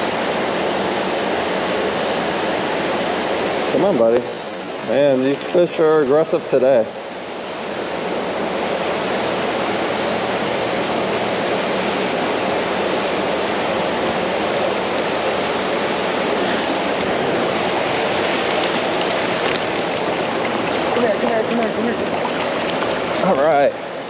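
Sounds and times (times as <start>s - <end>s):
creek water rushing over rocks: 7.0s - 24.0s.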